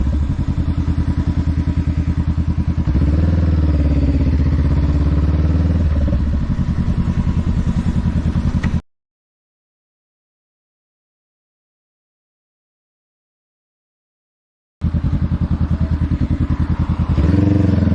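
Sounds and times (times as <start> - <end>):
motorcycle engine idling and revving: 0.0 - 8.8, 14.8 - 17.9.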